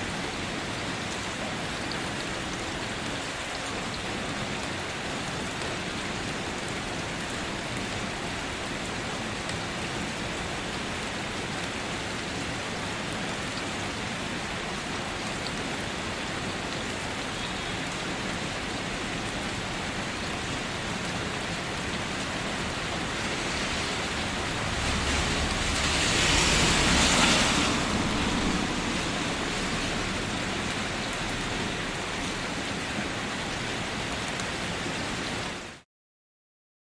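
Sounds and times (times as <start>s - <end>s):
steady rain hiss: 0.0s - 35.8s
low rumble: 22.9s - 31.9s.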